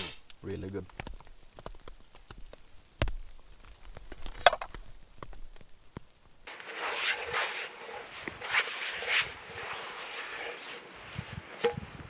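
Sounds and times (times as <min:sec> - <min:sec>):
crunchy rustling noise: 0:00.0 - 0:06.6
handling clicks and knocks: 0:00.2 - 0:06.5.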